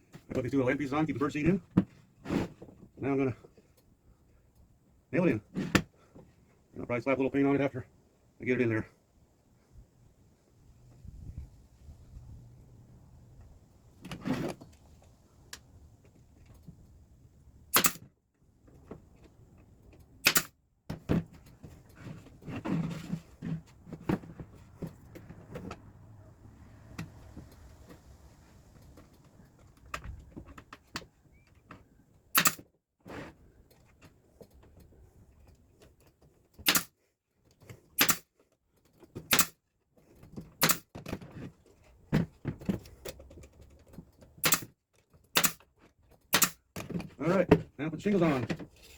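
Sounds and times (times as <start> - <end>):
brad nailer firing: 17.7 - 18.1, 20.2 - 20.5, 32.4 - 32.6, 36.6 - 36.9, 38.0 - 38.3, 39.3 - 39.6, 40.6 - 40.9, 44.4 - 44.7, 45.4 - 45.6, 46.3 - 46.6.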